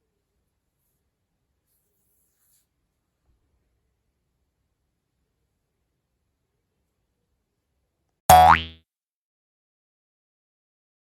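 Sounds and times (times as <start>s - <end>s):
cartoon boing sound effect: 8.3s - 8.8s.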